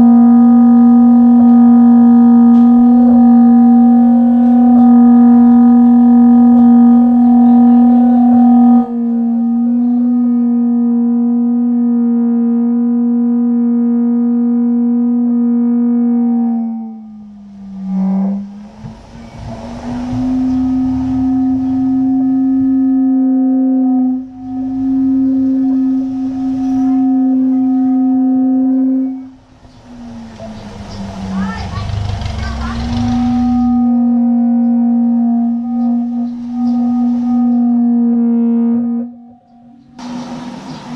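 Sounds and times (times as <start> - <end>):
gimbal motors humming: 0.0 - 40.9.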